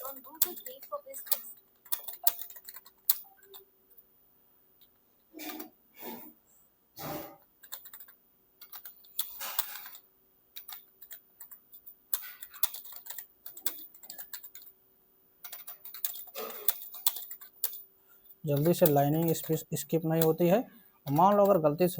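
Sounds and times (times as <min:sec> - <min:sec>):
keyboard keys clacking: 0:00.0 - 0:03.7, 0:07.6 - 0:10.0, 0:18.5 - 0:20.5.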